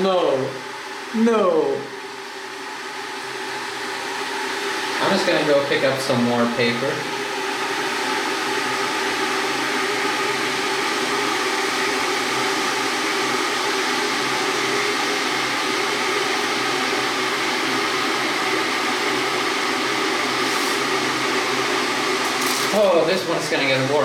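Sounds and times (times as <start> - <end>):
water heater rushing: 3.0 - 11.4, 12.2 - 24.0.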